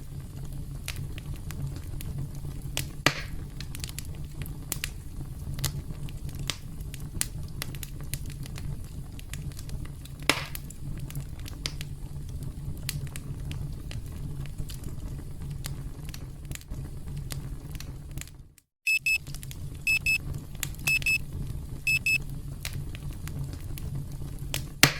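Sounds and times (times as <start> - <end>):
campfire crackling: 0.0 - 18.5, 19.1 - 24.9
electronic timer alarm beeping: 18.9 - 19.2, 19.9 - 20.2, 20.9 - 21.2, 21.9 - 22.2.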